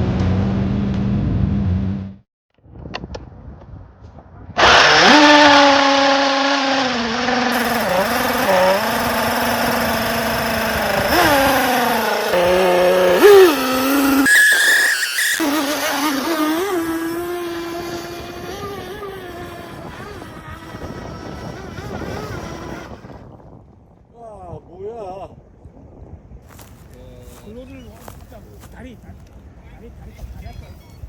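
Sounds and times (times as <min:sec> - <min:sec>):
model boat engine buzzing: 0:04.6 - 0:23.2.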